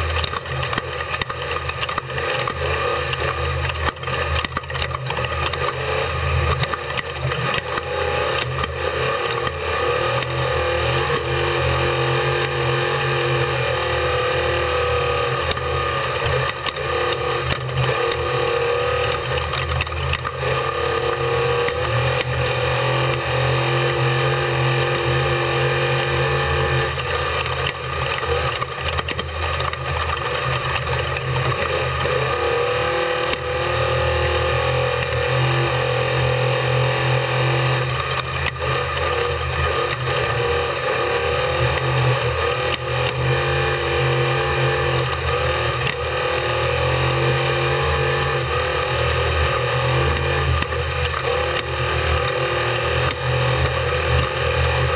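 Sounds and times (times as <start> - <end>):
truck engine running hard: 0.0 - 54.9.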